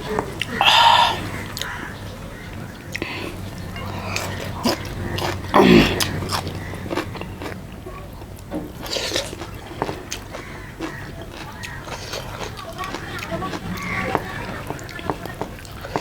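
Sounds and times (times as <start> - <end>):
mouth clicks: 0.1 - 2.0
person biting and chewing food: 2.9 - 16.0.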